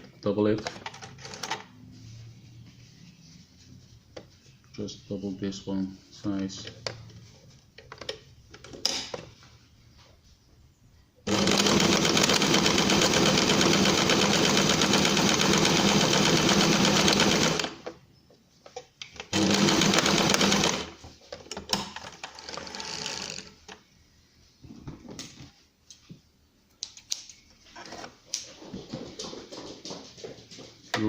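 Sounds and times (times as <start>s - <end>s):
sewing machine running: 11.3s - 17.8s, 19.3s - 20.9s, 22.3s - 23.5s.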